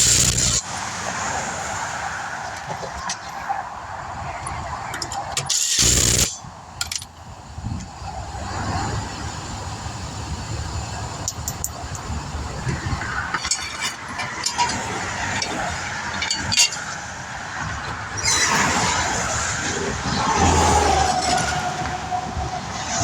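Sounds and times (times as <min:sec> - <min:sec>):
traffic rushing past: 0:00.0 - 0:06.8, 0:11.8 - 0:23.0
vehicle passing with tyre whine: 0:00.2 - 0:04.4, 0:17.2 - 0:23.0
wind on microphone: 0:05.8 - 0:13.6.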